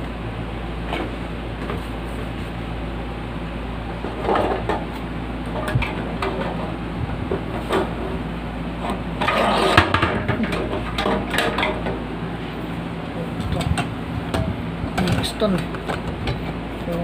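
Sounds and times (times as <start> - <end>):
plastic fan being handled: 3.9 - 8.2, 8.8 - 12.1, 13.2 - 17.0.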